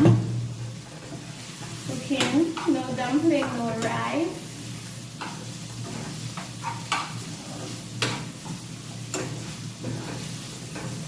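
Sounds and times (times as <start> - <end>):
food sizzling in a pot: 0.0 - 11.0
spoon scraping a pot: 5.2 - 11.0.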